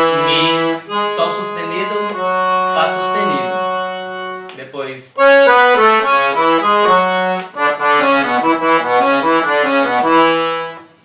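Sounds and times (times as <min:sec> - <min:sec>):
piano accordion melody: 0:00.0 - 0:11.0.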